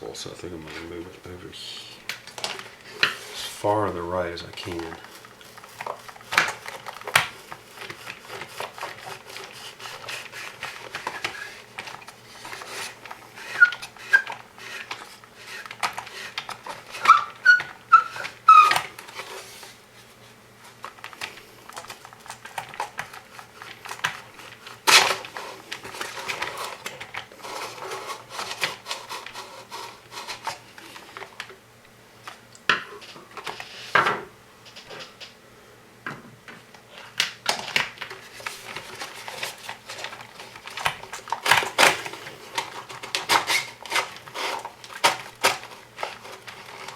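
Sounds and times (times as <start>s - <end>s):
short squeaks: 17.0s - 18.9s.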